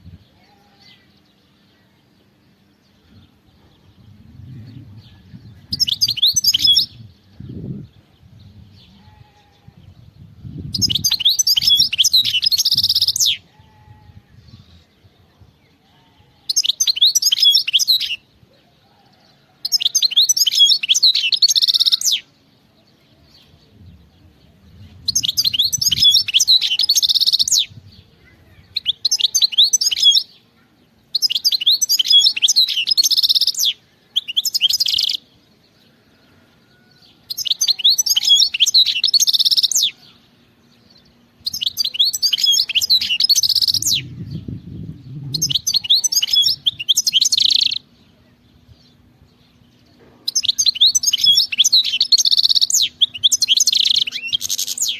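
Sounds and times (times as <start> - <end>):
goldfinch singing: 4.6 - 15.0, 15.7 - 18.2, 24.5 - 30.5, 31.1 - 35.3, 36.8 - 54.9.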